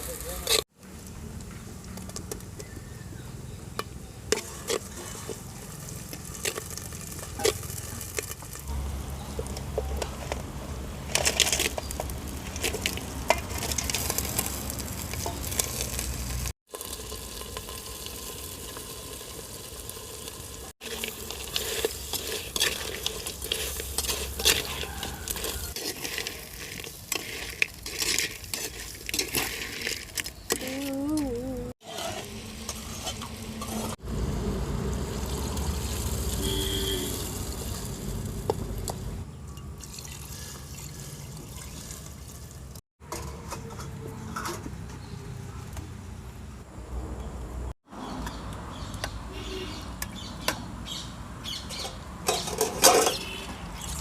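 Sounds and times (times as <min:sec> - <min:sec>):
ladle scraping a pan: 0:04.3 - 0:08.6, 0:20.8 - 0:30.7, 0:31.8 - 0:34.0, 0:51.8 - 0:54.0
food sizzling in hot oil: 0:04.3 - 0:09.8, 0:10.9 - 0:30.6, 0:31.8 - 0:39.0.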